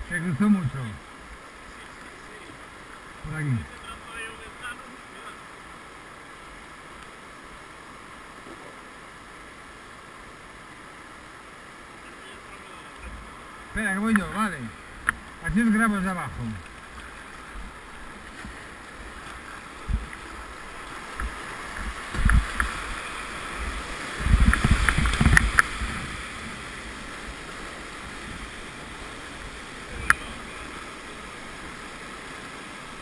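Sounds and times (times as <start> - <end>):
rushing river whitewater: 0.0 - 33.0
kayak and paddle knocks: 19.2 - 20.2, 23.6 - 26.0.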